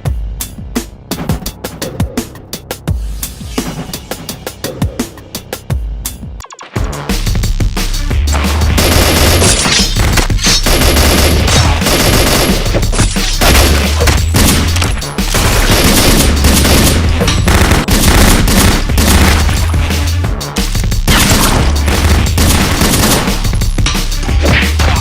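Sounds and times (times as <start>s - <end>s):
electronic music with bass line: 0.0s - 25.0s
machine-gun bursts: 8.8s - 9.7s, 10.4s - 13.8s, 15.3s - 19.4s.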